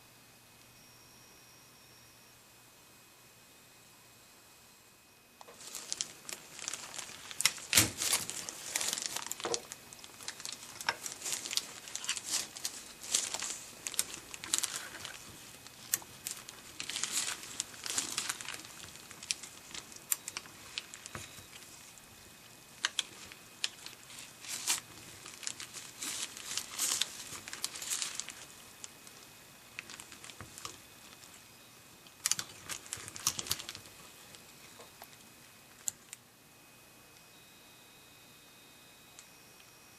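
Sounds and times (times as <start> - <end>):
crinkling and rustling handling noise: 5.4 - 36.2.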